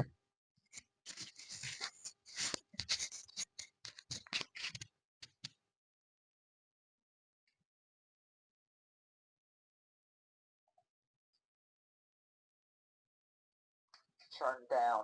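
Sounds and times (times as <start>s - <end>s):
scratchy rustling: 1.1s - 5.5s.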